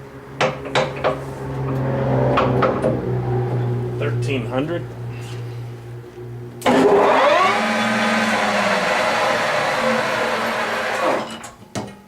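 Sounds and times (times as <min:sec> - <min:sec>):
lathe spindle running: 0:06.6 - 0:11.2.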